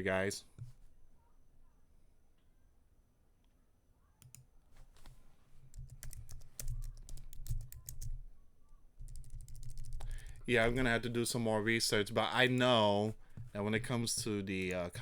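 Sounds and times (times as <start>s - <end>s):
computer keyboard typing: 5.7s - 8.2s, 9.0s - 10.9s.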